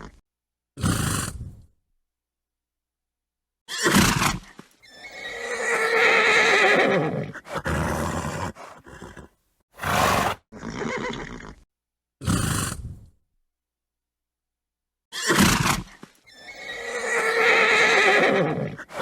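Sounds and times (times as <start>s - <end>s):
horse neighing: 4.9s - 11.6s, 16.3s - 19.0s
rough short horse calls: 7.4s - 11.2s.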